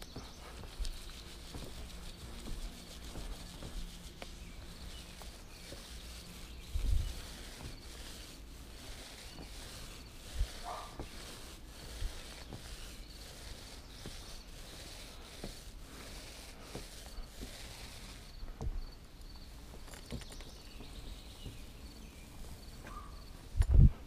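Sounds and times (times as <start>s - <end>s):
steady hiss: 0.0s - 24.0s
insect chirping: 18.2s - 20.7s.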